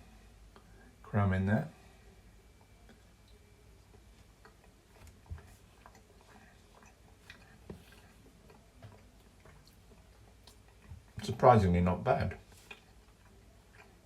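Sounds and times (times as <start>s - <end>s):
person chewing cake: 2.5s - 11.3s, 12.3s - 14.0s.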